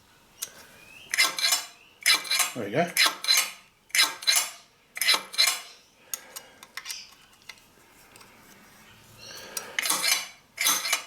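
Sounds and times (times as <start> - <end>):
metal parts clinking: 1.1 - 5.7, 9.8 - 11.0.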